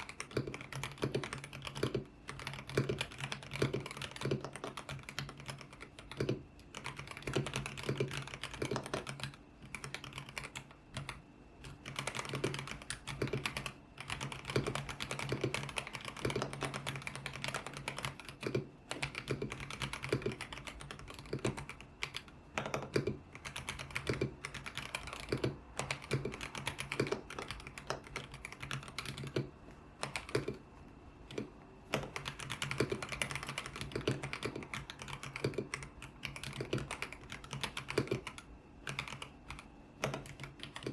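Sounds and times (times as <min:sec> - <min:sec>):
typing on mechanical keyboard: 0:00.0 - 0:30.7, 0:31.3 - 0:40.9.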